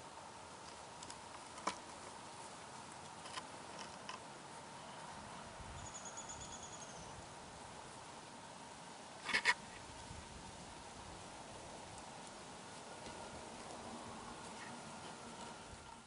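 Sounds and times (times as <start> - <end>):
faint hiss: 0.0 - 16.0
faint high whistle: 5.8 - 7.1.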